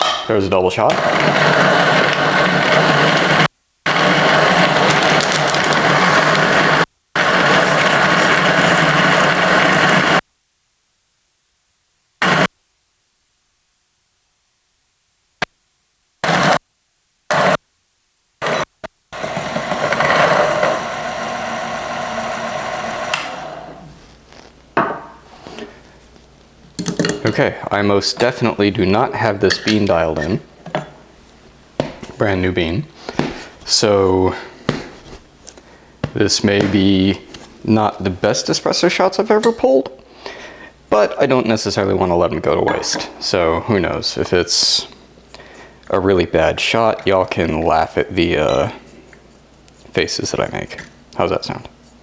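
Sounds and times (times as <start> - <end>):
coffee grinder grinding beans: 0.9 - 10.2, 19.2 - 24.5.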